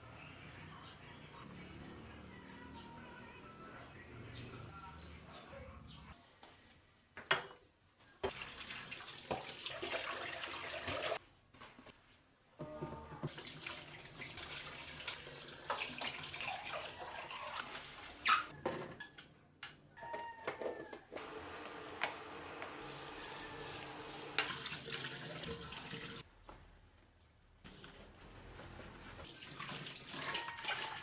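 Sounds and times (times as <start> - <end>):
tap water running into sink: 8.3 - 11.2, 13.2 - 18.2, 22.8 - 26.2, 29.3 - 31.0.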